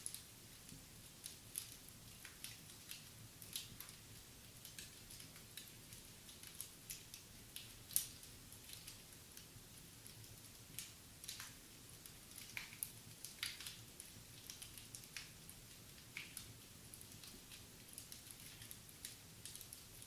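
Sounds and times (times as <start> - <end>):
faint steady hiss: 0.0 - 20.0
wood fire crackling: 0.0 - 20.0.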